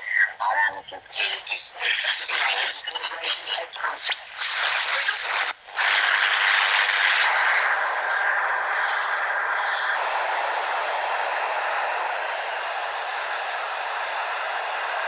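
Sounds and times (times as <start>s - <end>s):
garbled voice over radio: 0.0s - 6.2s
radio band noise hiss: 0.0s - 15.0s.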